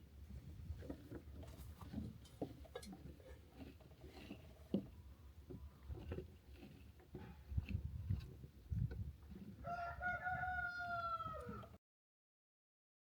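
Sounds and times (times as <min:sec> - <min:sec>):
rooster crowing: 0:09.6 - 0:11.7.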